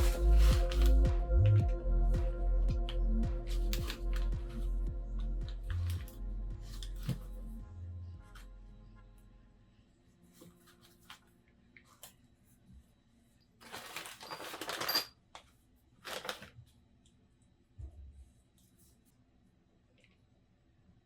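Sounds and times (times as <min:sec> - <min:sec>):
rustling and scraping: 0:00.0 - 0:01.0, 0:13.6 - 0:15.1.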